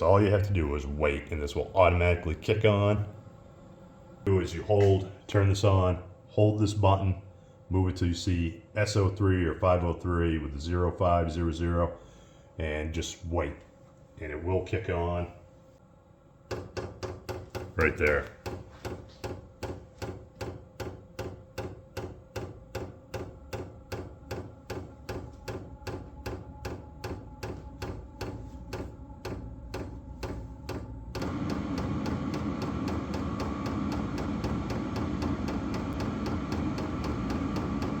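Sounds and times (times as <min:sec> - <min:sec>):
heater running: 0:12.6 - 0:38.0.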